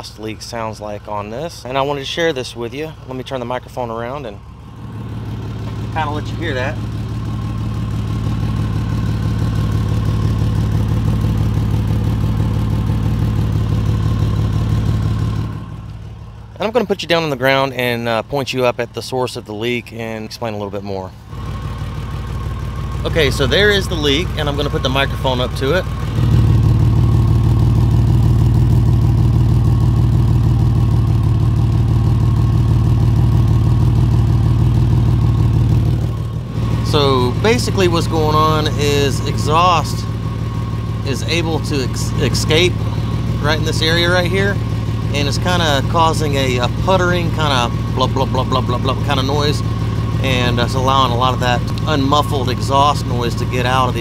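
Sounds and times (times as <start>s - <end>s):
puttering unmuffled exhaust: 0.0s - 54.0s.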